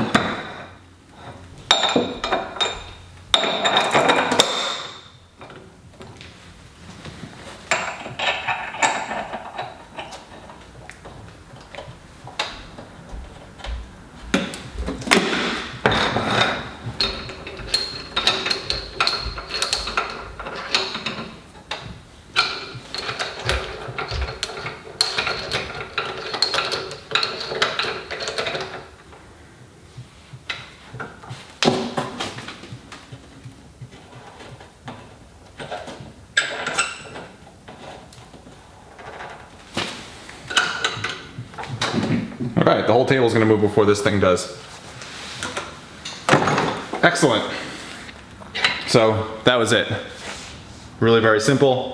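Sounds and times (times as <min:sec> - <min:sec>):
metallic clicking and clinking: 0:07.7 - 0:29.2, 0:40.4 - 0:42.2.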